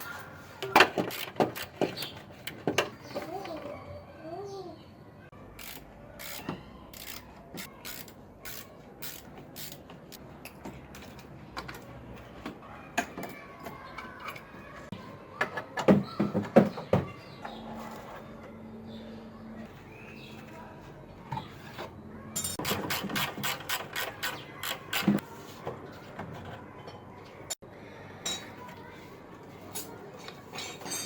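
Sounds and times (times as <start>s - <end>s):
ratchet clicks: 5.6s - 10.2s.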